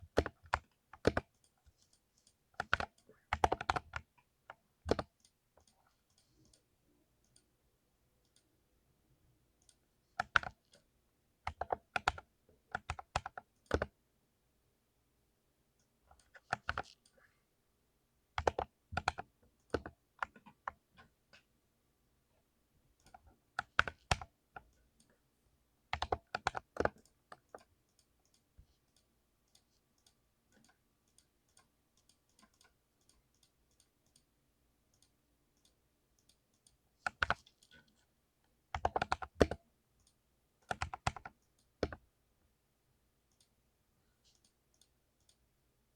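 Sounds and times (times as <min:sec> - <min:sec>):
mechanical keyboard typing: 0:00.1 - 0:01.4, 0:02.6 - 0:04.2, 0:04.8 - 0:05.2, 0:10.2 - 0:10.8, 0:11.5 - 0:14.0, 0:16.2 - 0:17.0, 0:18.4 - 0:20.8, 0:23.0 - 0:24.3, 0:25.9 - 0:27.7, 0:37.0 - 0:37.8, 0:38.7 - 0:39.6, 0:40.6 - 0:42.0.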